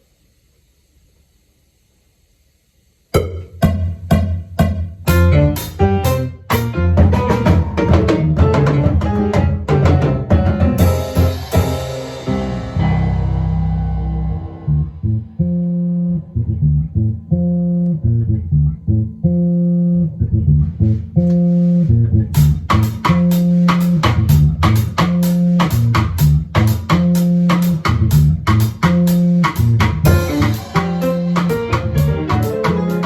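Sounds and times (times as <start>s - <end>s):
drums beat: 3.2s - 14.8s, 22.4s - 33.0s
bass guitar riff: 3.2s - 33.0s.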